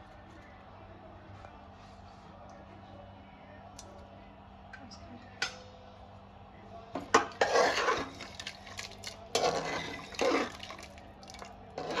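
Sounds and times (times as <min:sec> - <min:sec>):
metal utensil scraping a pot: 0:07.1 - 0:12.0.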